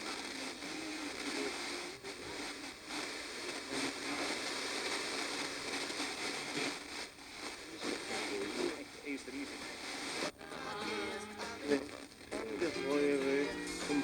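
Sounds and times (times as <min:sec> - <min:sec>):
broken radio broadcast fragments: 0:00.0 - 0:14.0
radio static hiss: 0:00.0 - 0:14.0.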